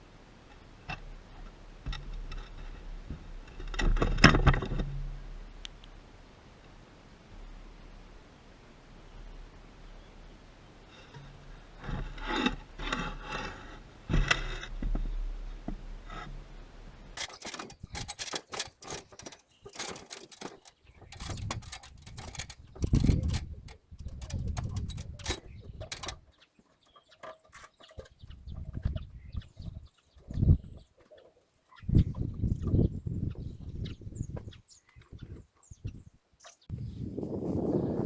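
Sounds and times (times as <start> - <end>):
sharp clicks and taps: 17.2 - 26.2
birds calling: 17.2 - 36.7.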